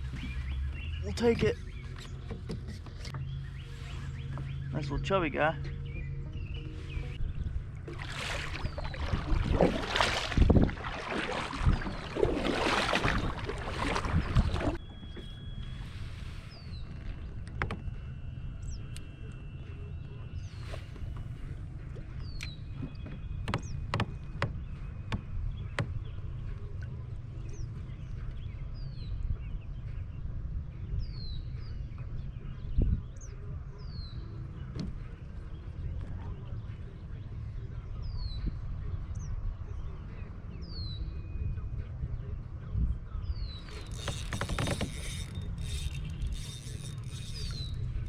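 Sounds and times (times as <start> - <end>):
bird chirping: 43.2 - 48.0.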